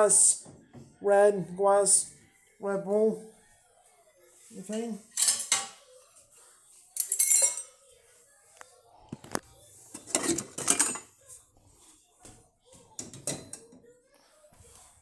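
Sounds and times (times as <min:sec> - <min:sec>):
dishes and cups clinking: 0:04.7 - 0:05.8, 0:07.0 - 0:07.8, 0:09.2 - 0:11.2, 0:13.0 - 0:13.8.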